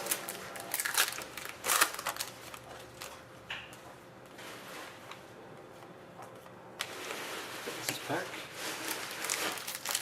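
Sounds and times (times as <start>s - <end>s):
card packs rustling and crinkling: 0.0s - 3.2s, 6.8s - 10.0s.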